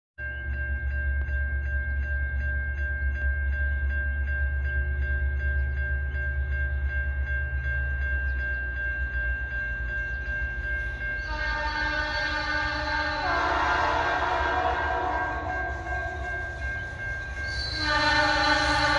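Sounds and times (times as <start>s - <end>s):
crossing bell ringing: 0.2s - 18.9s
diesel locomotive rumble: 3.7s - 18.9s
locomotive horn chord: 10.9s - 18.9s.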